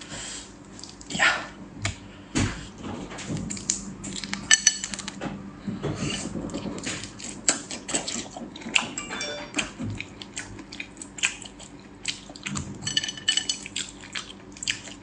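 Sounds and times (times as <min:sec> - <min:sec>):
utensils clinking against dish: 0:08.8 - 0:09.8, 0:12.8 - 0:13.7.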